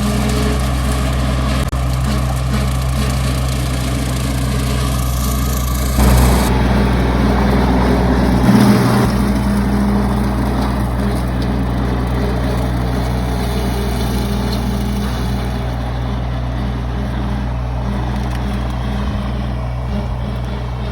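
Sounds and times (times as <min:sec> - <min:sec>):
vehicle engine running: 0:00.0 - 0:20.9.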